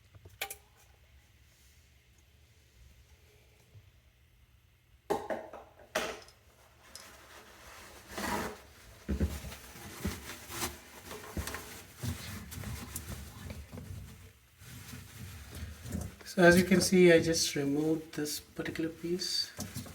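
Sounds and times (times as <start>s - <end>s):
scraping rub: 7.3s - 8.8s.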